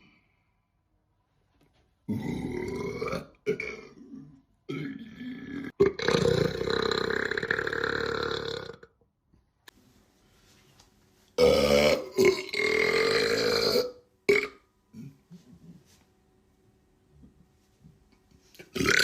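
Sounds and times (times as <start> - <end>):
man burping: 2.1 - 9.0, 11.4 - 15.2, 18.6 - 19.0.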